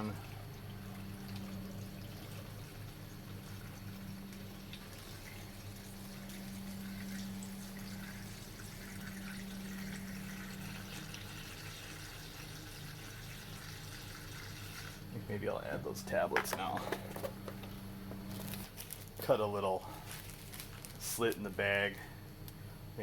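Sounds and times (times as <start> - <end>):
liquid trickling and gurgling: 0.0 - 15.1
steady low hum: 0.0 - 23.0.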